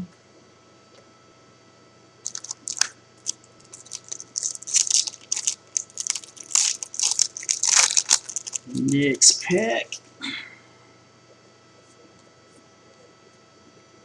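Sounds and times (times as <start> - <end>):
foil wrapper crinkling: 2.3 - 9.2.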